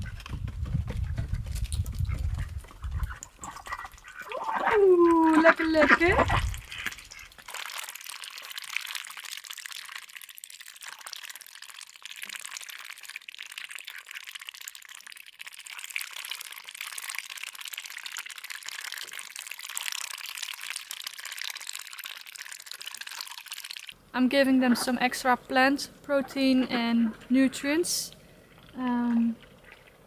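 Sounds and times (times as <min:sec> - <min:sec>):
ducks dabbling in water: 0:01.9 - 0:30.0.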